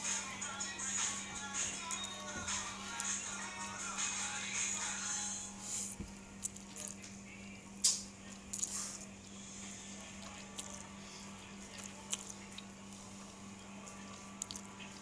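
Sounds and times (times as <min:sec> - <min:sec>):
steady low hum: 0:00.0 - 0:15.0
soft squishing: 0:05.6 - 0:07.2, 0:08.2 - 0:15.0.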